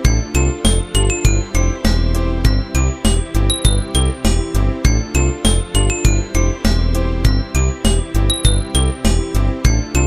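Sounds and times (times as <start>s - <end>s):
upbeat background music: 0.0s - 10.0s.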